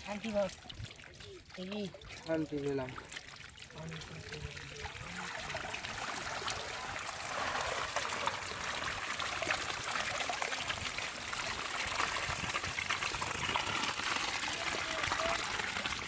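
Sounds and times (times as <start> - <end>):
water trickling and splashing: 0.0 - 16.0.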